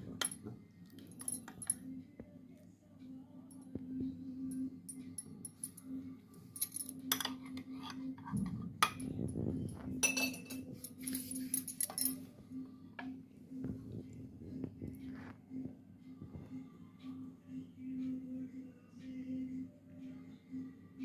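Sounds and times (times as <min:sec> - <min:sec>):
metal spoon clinking against glass: 0:01.0 - 0:01.9, 0:06.6 - 0:09.1, 0:10.0 - 0:12.2.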